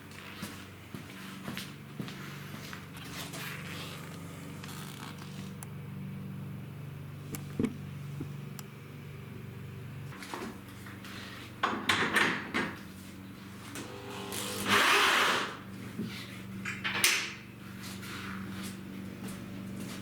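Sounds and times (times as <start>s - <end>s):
steady low hum: 0.0s - 20.0s
scraping rustle: 3.0s - 5.6s.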